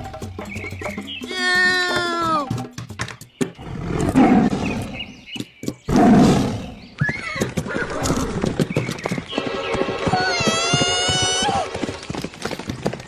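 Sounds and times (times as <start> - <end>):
tiger roaring: 3.6 - 5.1, 5.9 - 6.8.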